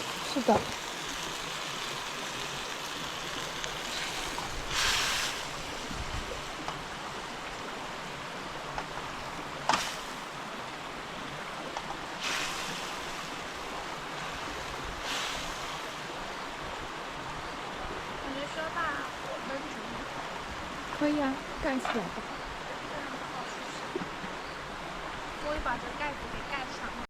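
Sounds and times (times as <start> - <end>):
meat and sauce sizzling in a pan: 0.0 - 10.6, 12.0 - 16.5.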